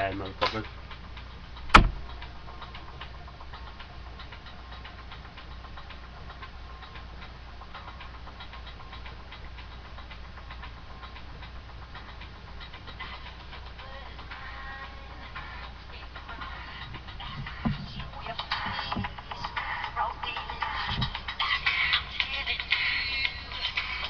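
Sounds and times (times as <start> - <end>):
faint clicks and ticks: 0.0 - 24.0
steady low hum: 0.0 - 24.0.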